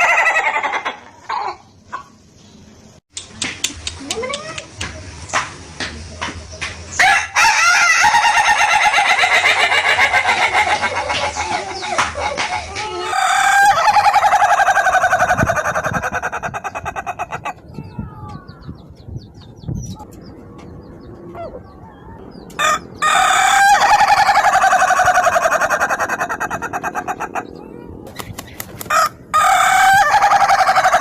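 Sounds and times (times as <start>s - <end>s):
rooster crowing like laughter: 0.0s - 1.6s, 7.0s - 11.5s, 12.4s - 17.6s, 22.7s - 27.5s, 28.9s - 31.0s.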